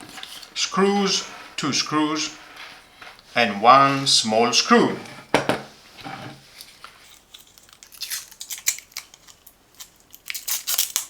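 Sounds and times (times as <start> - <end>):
plastic parts clicking and crinkling: 6.6 - 11.0.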